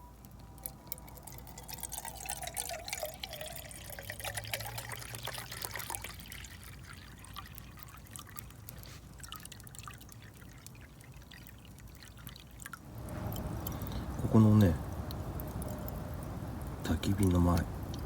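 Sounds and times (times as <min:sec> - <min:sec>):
campfire crackling and popping: 0:09.6 - 0:18.0.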